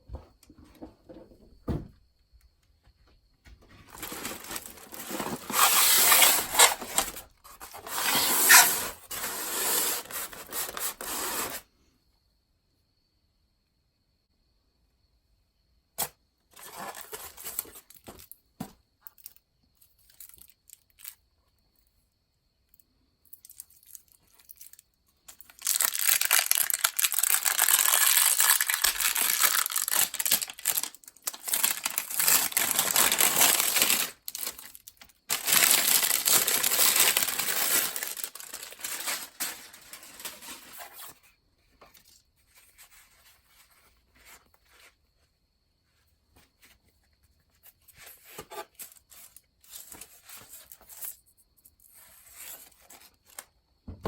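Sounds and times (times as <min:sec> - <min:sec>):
packaging rustling and knocking: 0:03.6 - 0:11.5, 0:25.6 - 0:41.1
packaging tearing and crinkling: 0:03.9 - 0:11.6, 0:25.4 - 0:41.2.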